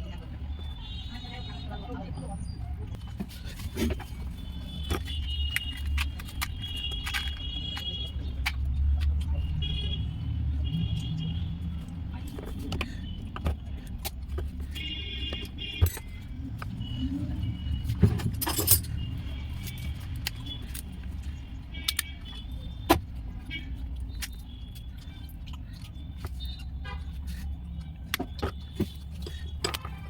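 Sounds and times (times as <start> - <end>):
metallic clinks and taps: 15.8 - 16.2, 18.4 - 19.0.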